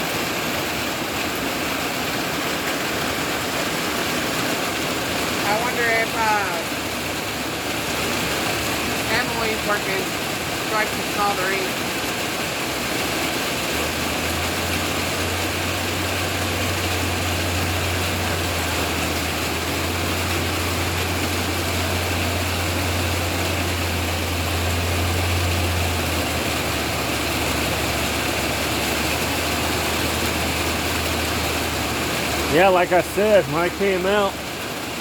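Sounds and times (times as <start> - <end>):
steady rain falling: 0.0 - 35.0.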